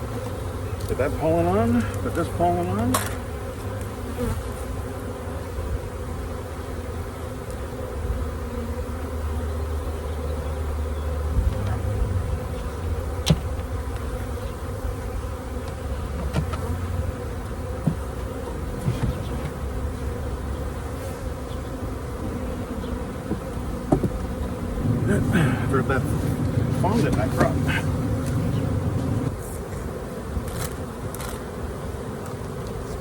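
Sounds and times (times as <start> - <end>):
honeybees buzzing: 0.0 - 33.0
light knocks: 23.2 - 24.3.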